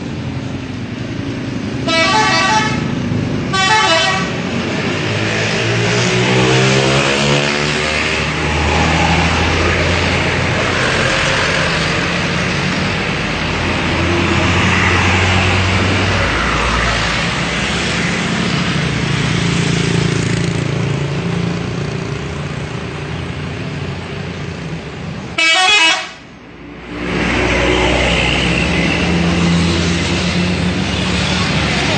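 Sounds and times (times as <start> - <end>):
bus engines running: 0.0 - 31.9
outdoor crowd noise: 0.0 - 31.9
multi-tone bus air horn: 1.8 - 4.4, 25.4 - 26.3.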